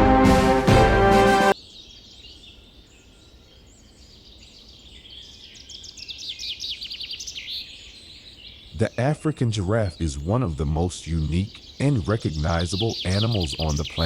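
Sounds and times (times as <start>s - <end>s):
orchestral music: 0.0s - 1.6s
wild birds calling: 1.6s - 14.0s
bird chirping high and fast: 5.2s - 14.0s.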